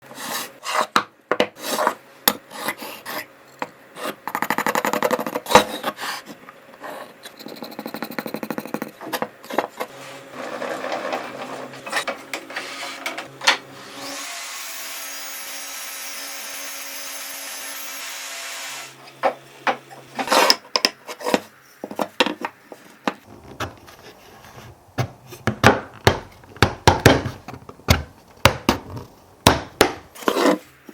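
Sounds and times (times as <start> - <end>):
scraping and rubbing on wood: 0.0 - 3.3, 4.0 - 13.3, 19.7 - 26.5, 29.8 - 30.8.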